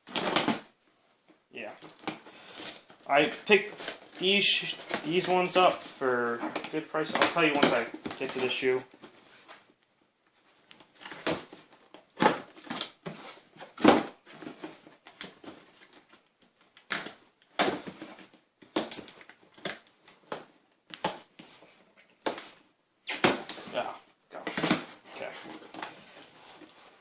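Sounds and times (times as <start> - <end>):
packaging crinkling and ripping: 1.7 - 8.7.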